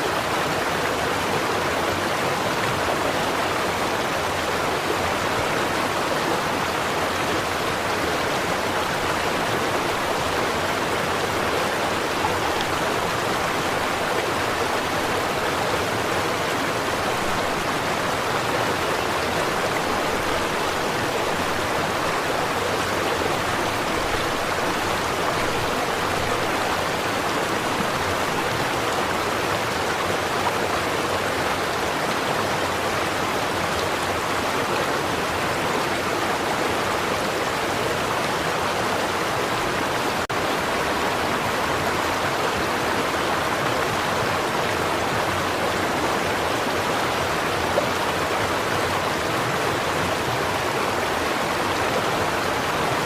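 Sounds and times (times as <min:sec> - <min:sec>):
stream flowing over stones: 0:00.0 - 0:53.0.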